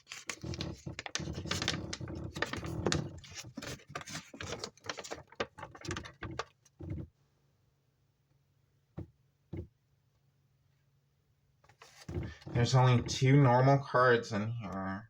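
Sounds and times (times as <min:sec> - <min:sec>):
card packaging rustling and crinkling: 0:00.0 - 0:06.7, 0:11.7 - 0:13.2.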